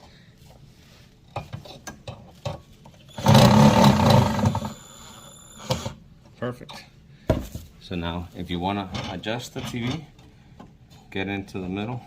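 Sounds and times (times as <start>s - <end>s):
loud mechanical noise burst: 3.1s - 6.0s.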